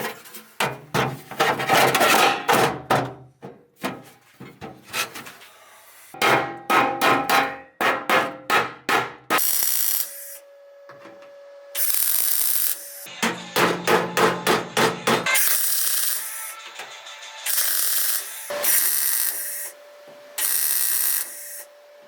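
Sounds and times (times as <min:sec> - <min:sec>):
hand tool striking metal: 0:06.2 - 0:09.6, 0:13.1 - 0:16.8
hissing bursts: 0:09.4 - 0:10.4, 0:11.8 - 0:13.2, 0:15.3 - 0:19.8, 0:20.4 - 0:21.7.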